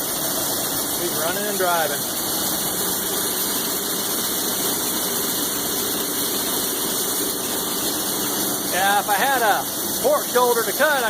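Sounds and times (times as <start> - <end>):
band saw motor running: 0.0 - 11.0.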